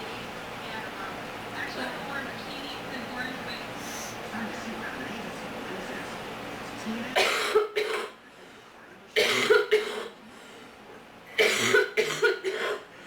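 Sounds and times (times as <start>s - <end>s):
person coughing: 7.2s - 8.2s, 9.2s - 10.2s, 11.4s - 12.9s.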